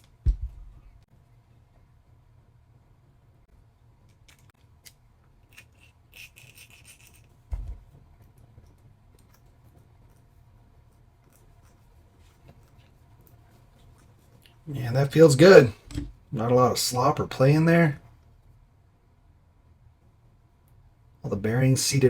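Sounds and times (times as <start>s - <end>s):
dull thump: 0.2s - 0.8s.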